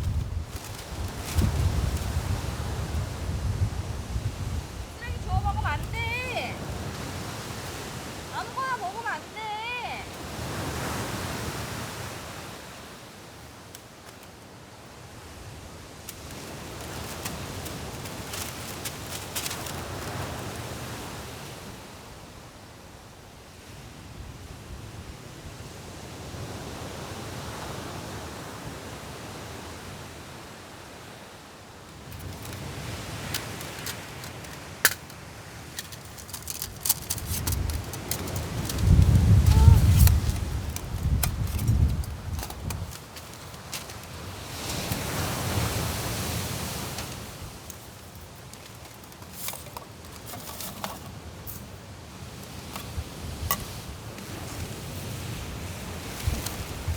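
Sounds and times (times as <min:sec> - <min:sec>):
sea waves washing onto beach: 0:00.0 - 0:22.8, 0:23.4 - 0:56.9
small clicks and taps: 0:33.3 - 0:44.1.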